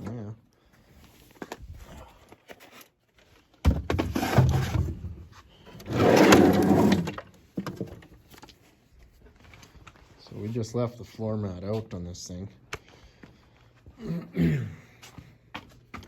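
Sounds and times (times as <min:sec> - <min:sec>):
scraping and rustling: 0:04.0 - 0:07.2.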